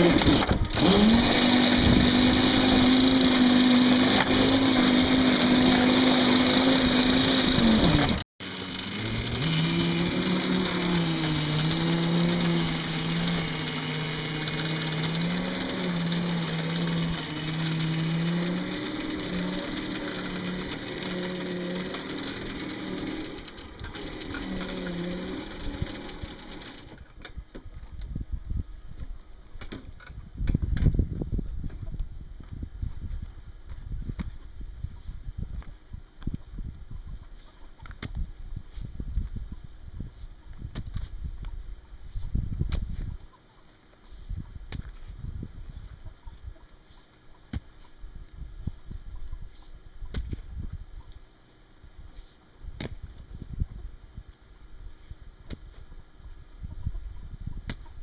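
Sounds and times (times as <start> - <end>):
bulldozer engine running: 0.0 - 27.0.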